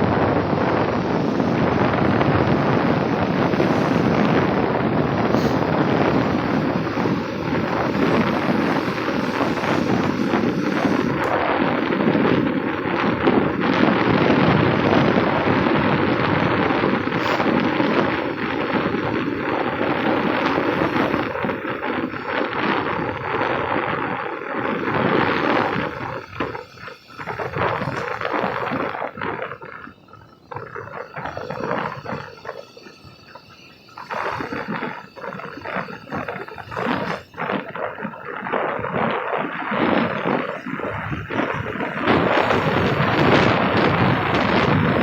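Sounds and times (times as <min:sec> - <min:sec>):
wind buffeting microphone: 0:00.0 - 0:45.0.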